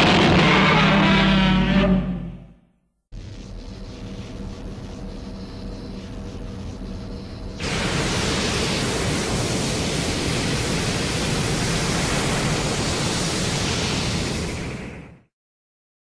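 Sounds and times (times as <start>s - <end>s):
rushing hiss sound effect: 7.6s - 15.3s.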